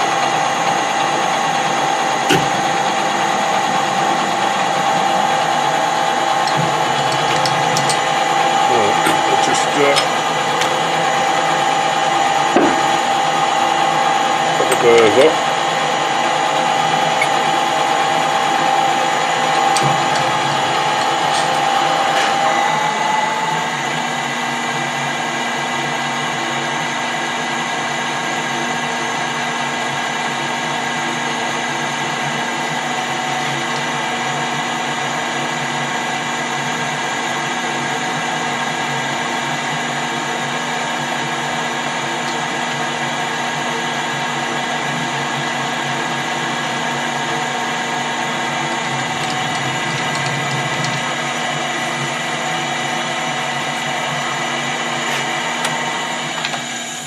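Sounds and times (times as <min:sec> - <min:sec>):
high whine: 0:00.0 - 0:24.6
metal lathe running: 0:00.0 - 0:57.0.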